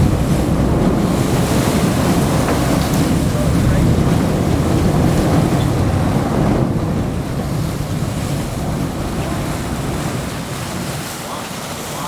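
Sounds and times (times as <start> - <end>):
sea rushing: 0.0 - 12.0
wind buffeting microphone: 0.0 - 12.0.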